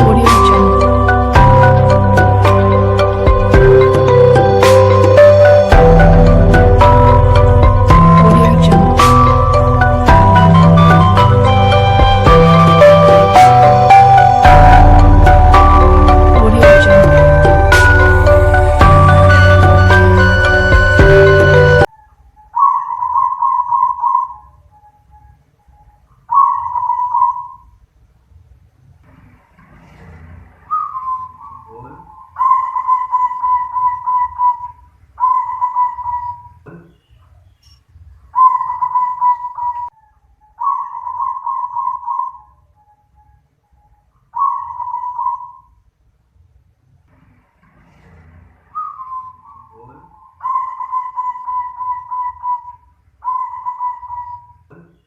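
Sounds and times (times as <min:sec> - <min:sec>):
dove cooing: 0:22.5 - 0:24.6, 0:26.3 - 0:27.6, 0:30.7 - 0:36.6, 0:38.4 - 0:42.9, 0:44.4 - 0:45.7, 0:48.8 - 0:54.8.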